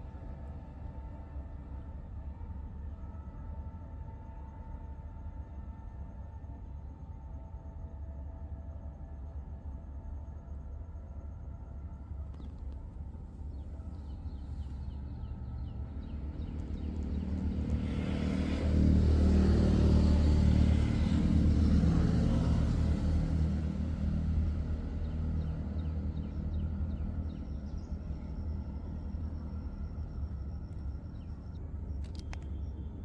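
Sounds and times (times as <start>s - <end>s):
vehicle engine passing by: 16.0s - 27.0s.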